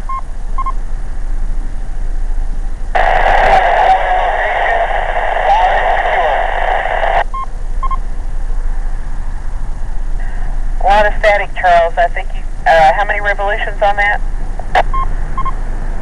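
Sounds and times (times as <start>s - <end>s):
radio static: 3.0s - 7.2s, 10.8s - 14.9s
radio voice buried in static: 3.0s - 7.2s, 10.8s - 14.8s.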